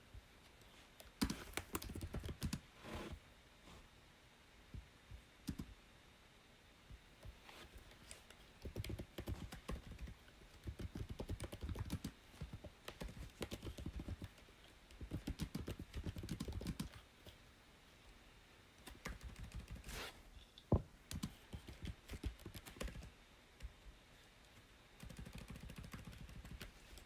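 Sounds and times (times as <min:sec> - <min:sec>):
keyboard typing: 0:01.2 - 0:02.6, 0:05.4 - 0:05.7, 0:08.6 - 0:14.4, 0:15.0 - 0:17.0, 0:18.8 - 0:19.9, 0:21.1 - 0:23.1, 0:25.0 - 0:26.7.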